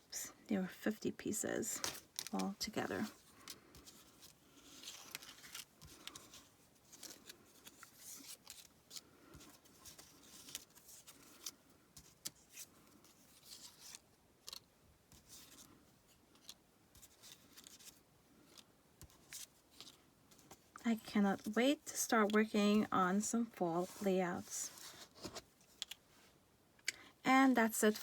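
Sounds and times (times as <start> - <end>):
cardstock pieces rustling: 1.8 - 14.6, 16.3 - 20.7.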